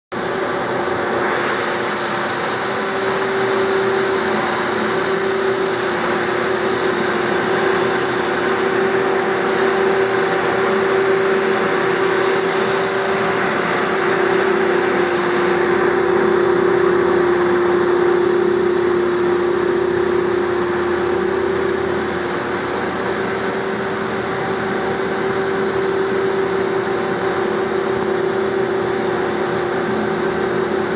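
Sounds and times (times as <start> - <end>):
router spindle whining: 0.2 - 30.9.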